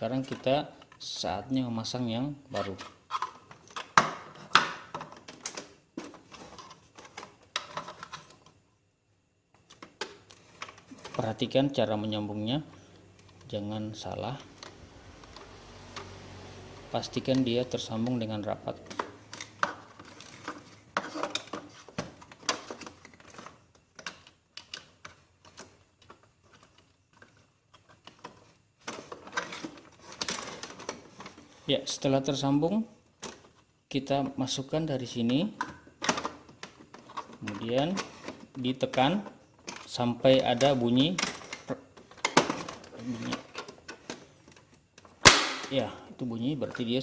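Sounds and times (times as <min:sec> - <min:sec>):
plastic parts clicking and knocking: 0:02.7 - 0:08.6, 0:09.5 - 0:11.4, 0:17.2 - 0:31.7, 0:33.0 - 0:33.7, 0:35.1 - 0:46.0.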